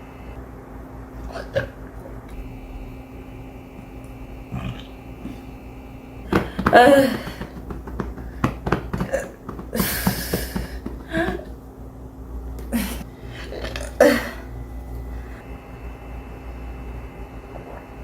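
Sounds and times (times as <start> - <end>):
person making throat sounds: 1.2 - 1.9, 4.1 - 11.5, 12.7 - 14.5.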